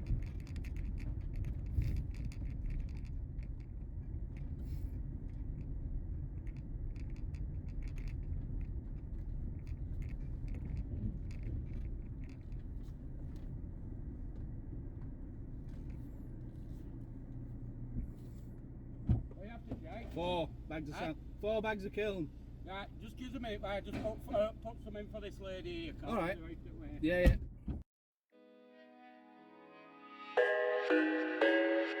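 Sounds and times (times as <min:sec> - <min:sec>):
light clicks and rattles: 0:00.0 - 0:18.4
van engine rumbling: 0:00.0 - 0:27.8.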